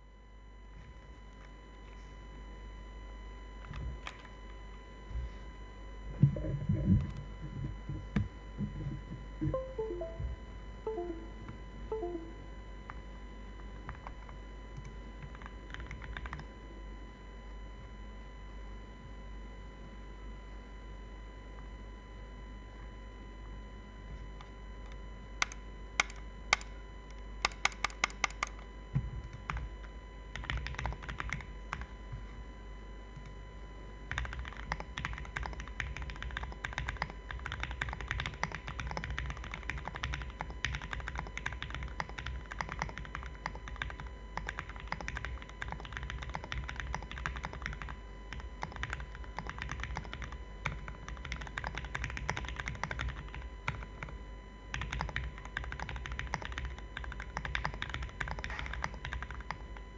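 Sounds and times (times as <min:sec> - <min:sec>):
mechanical keyboard typing: 0:25.4 - 0:26.7, 0:27.4 - 0:28.6, 0:30.3 - 0:31.9, 0:34.1 - 0:54.1, 0:54.7 - 0:59.6.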